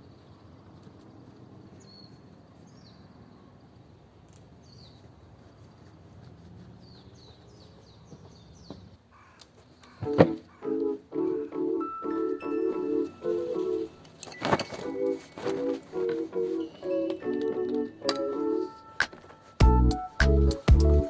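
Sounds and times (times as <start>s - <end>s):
small birds chirping: 0.8s - 3.5s, 4.3s - 5.8s, 6.6s - 11.0s.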